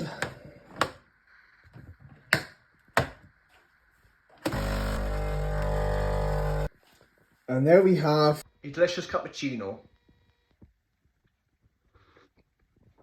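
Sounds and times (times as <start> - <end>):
coffee machine pump buzzing: 4.4 - 6.7.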